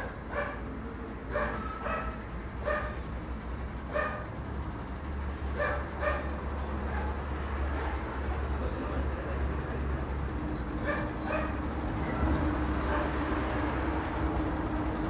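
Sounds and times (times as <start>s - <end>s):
dog barking: 0.0s - 0.7s, 1.3s - 3.0s, 3.9s - 4.3s, 5.6s - 8.0s, 10.8s - 11.6s, 12.8s - 13.2s.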